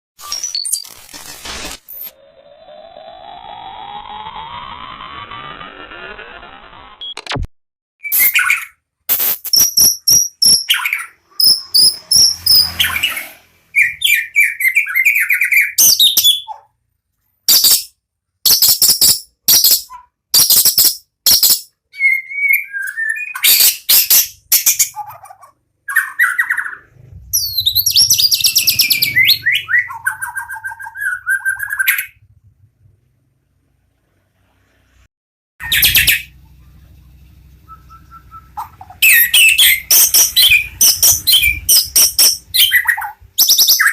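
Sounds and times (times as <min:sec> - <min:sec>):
songbird singing: 0:24.9 - 0:32.2, 0:35.6 - 0:43.9.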